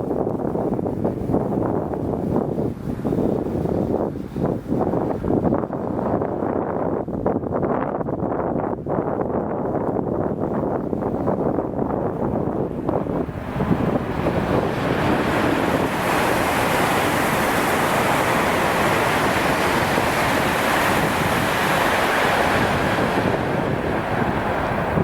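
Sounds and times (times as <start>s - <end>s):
high-speed train passing: 12.5s - 25.0s.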